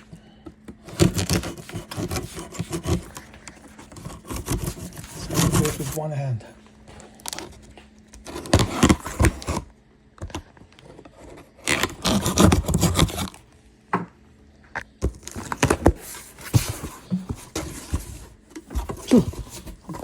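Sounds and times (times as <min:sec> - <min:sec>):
package tearing and crinkling: 0:11.6 - 0:13.4.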